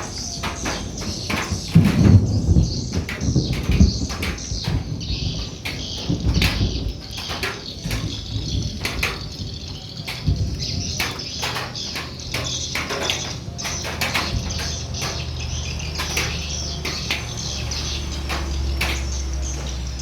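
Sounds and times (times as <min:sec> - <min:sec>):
birds twittering: 0:00.0 - 0:20.0.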